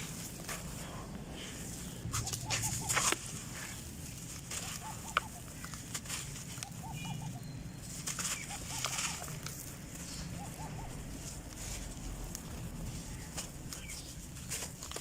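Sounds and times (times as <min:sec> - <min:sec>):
bird chirping: 0:01.8 - 0:03.8, 0:04.6 - 0:09.4, 0:10.0 - 0:11.2.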